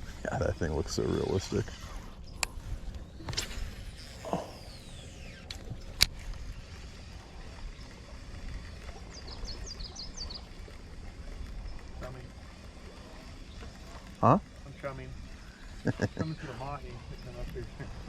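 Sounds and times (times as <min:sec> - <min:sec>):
bird chirping: 0:09.0 - 0:10.5.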